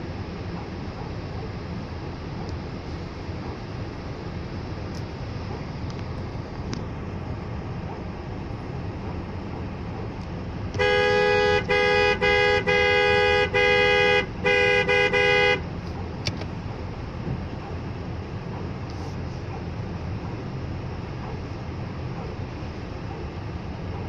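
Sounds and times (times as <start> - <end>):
two-note car horn blasts: 10.8 - 15.6.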